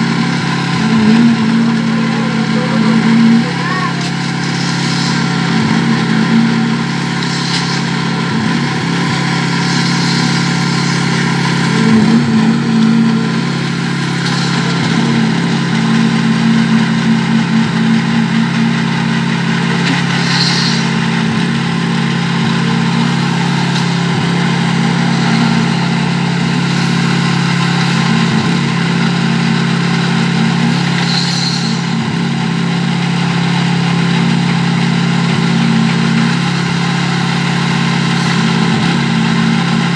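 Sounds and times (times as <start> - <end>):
engine running steadily: 0.0 - 39.9
short scrapes and clatters: 4.0 - 5.8, 7.1 - 8.1, 9.3 - 12.2, 14.0 - 15.0, 19.8 - 21.1, 30.8 - 32.0.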